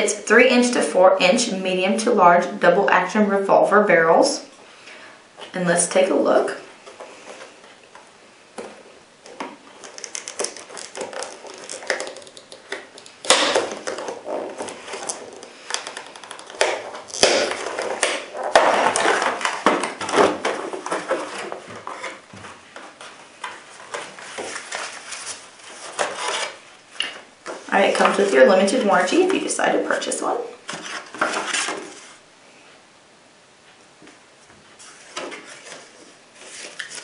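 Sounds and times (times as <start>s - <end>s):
packaging rustling and crinkling: 8.6s - 28.3s, 34.8s - 37.0s
packaging snapping: 9.3s - 21.2s.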